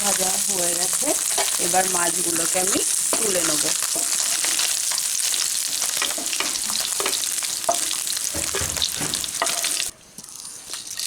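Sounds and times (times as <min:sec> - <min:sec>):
fish sizzling in hot oil: 0:00.0 - 0:11.0
spatula scraping a pan: 0:01.2 - 0:01.7, 0:02.4 - 0:09.9.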